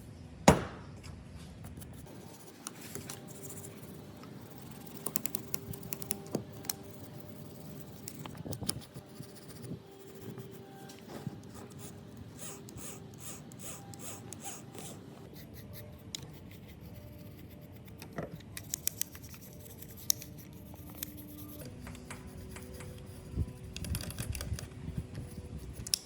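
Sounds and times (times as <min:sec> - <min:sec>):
rhythmic hand tool scraping: 0:02.0 - 0:26.0.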